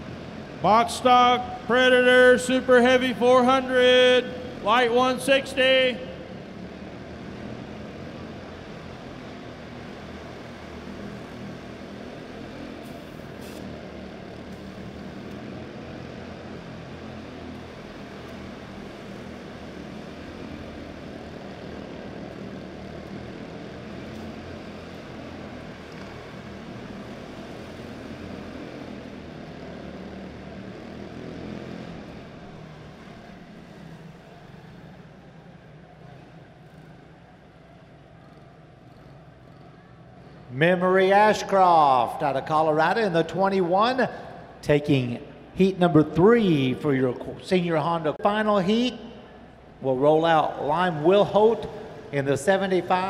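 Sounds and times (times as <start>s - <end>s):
engine crackle: 0.0s - 38.0s
race car engines droning: 0.0s - 53.0s.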